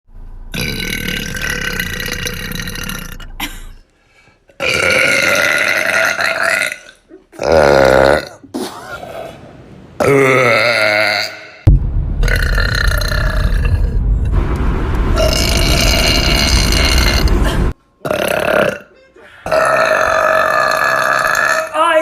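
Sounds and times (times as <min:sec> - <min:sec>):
long loud burps: 0:00.5 - 0:03.5, 0:04.6 - 0:08.6, 0:10.0 - 0:11.7, 0:15.2 - 0:21.8.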